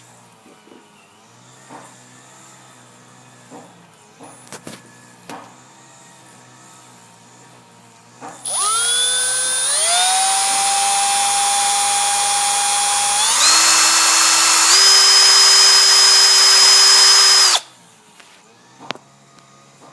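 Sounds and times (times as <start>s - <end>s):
electric drill motor whine: 8.4s - 17.8s.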